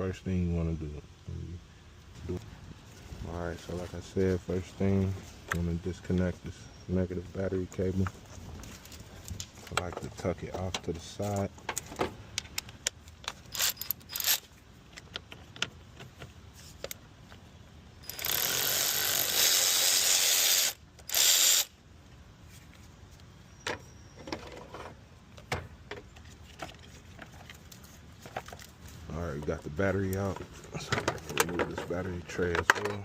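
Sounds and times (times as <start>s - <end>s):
hand tools clicking and clanking: 8.8s - 17.0s, 29.4s - 33.0s
ratchet wrench ratcheting: 13.4s - 14.4s, 18.0s - 21.7s.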